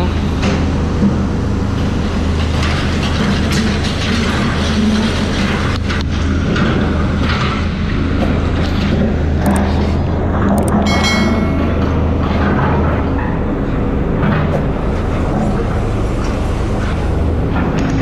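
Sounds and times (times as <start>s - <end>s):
road and traffic noise: 0.0s - 18.0s
vehicle engine running: 0.0s - 18.0s.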